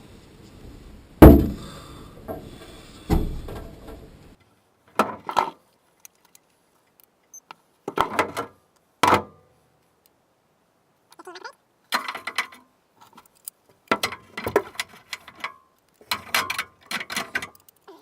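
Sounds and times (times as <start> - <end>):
handling knocks: 1.2 - 4.1.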